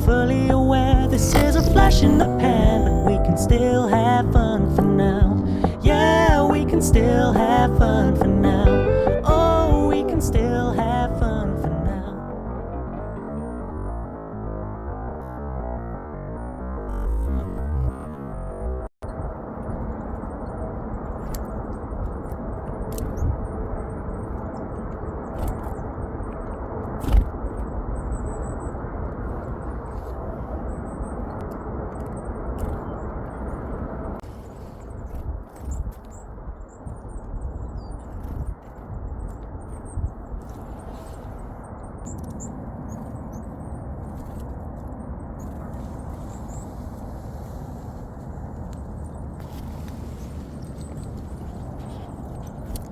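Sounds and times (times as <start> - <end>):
low rumbling outdoor noise: 0.0 - 35.4, 36.1 - 52.9
songbirds chirping: 27.7 - 52.9.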